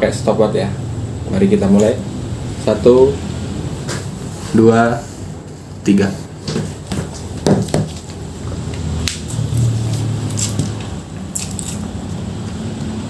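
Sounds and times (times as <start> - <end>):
chewing and eating sounds: 8.7 - 12.7.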